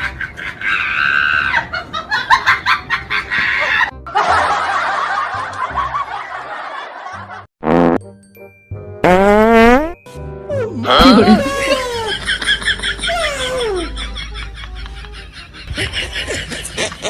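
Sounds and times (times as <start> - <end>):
background music: 3.2 - 17.0
snickering laughter: 10.9 - 17.0.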